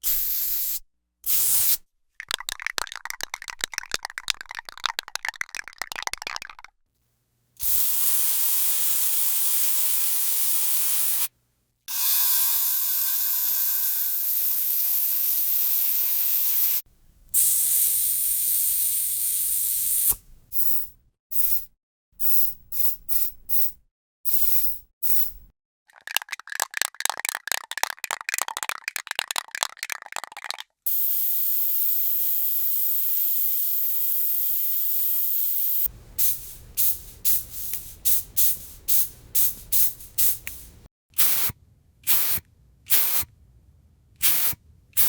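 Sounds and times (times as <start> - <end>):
spray paint spraying: 0.0 - 6.7, 7.6 - 11.3, 17.4 - 25.4, 26.0 - 41.5, 42.1 - 43.3, 44.2 - 44.6
spray can rattling shake: 0.1 - 6.7, 25.9 - 31.0, 36.2 - 40.8.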